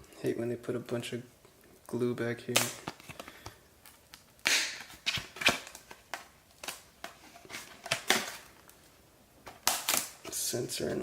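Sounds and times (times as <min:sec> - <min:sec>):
plastic wrapping crinkling: 0:02.5 - 0:11.0.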